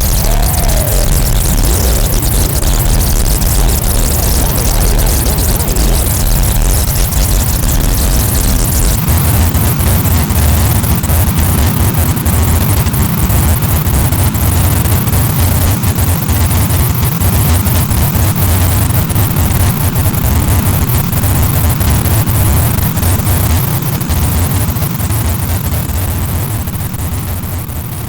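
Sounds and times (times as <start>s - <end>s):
distorted electronic buzz: 0.0s - 10.1s
crackling electronic glitches: 0.0s - 17.3s.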